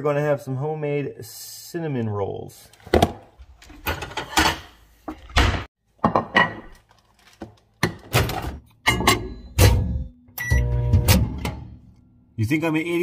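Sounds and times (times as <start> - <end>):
knocks and thuds in kitchen: 2.9 - 6.8.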